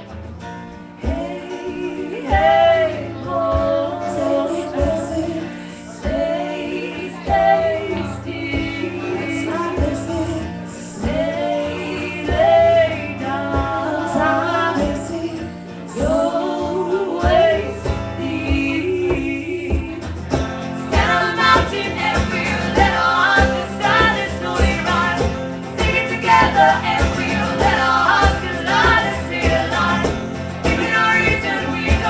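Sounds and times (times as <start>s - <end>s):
live band with steady bass: 0.0s - 32.0s
women singing: 0.8s - 32.0s.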